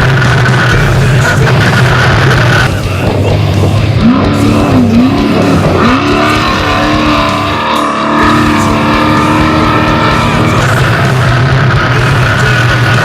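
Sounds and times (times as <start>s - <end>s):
background music: 0.0s - 13.0s
engine revving: 0.0s - 13.0s.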